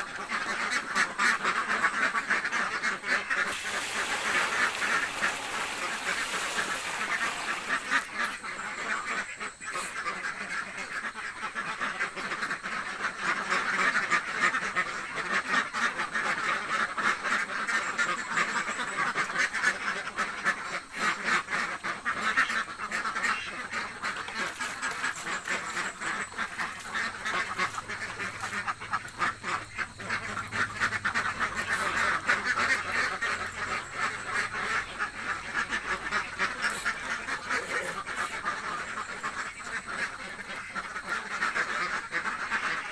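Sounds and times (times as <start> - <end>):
ducks quacking: 0.0 - 42.9.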